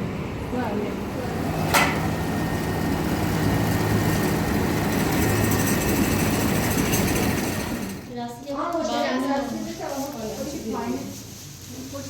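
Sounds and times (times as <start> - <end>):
motor humming: 0.0 - 8.1.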